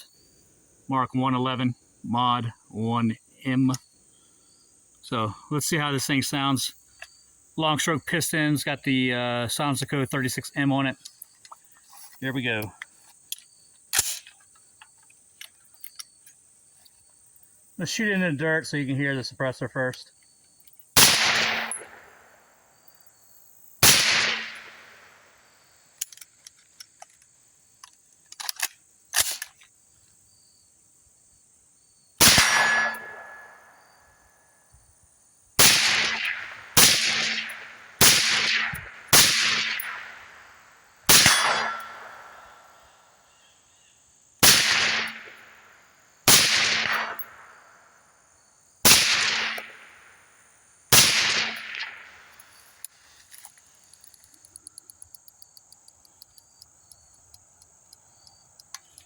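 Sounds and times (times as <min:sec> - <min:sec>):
suppressed rifle shots: 0:21.0 - 0:22.3, 0:23.8 - 0:25.2, 0:32.2 - 0:33.7, 0:35.6 - 0:40.4, 0:41.1 - 0:42.7, 0:44.4 - 0:45.6, 0:46.3 - 0:47.6, 0:48.8 - 0:50.0, 0:50.9 - 0:52.4
small clicks: 0:26.0 - 0:29.8, 0:51.7 - 0:59.0.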